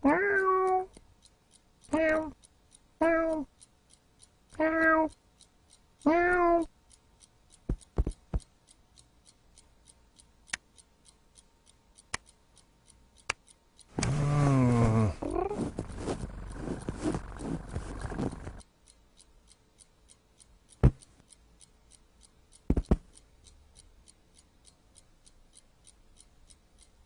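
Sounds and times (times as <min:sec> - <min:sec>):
cat meowing: 0:00.0 - 0:00.9, 0:06.1 - 0:06.7
scattered clicks: 0:00.0 - 0:27.0.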